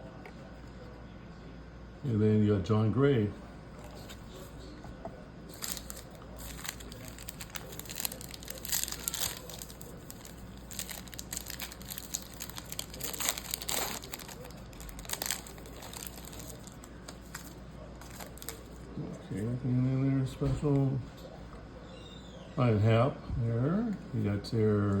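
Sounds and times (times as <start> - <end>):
plastic wrapper crinkling and tearing: 5.5 - 18.8.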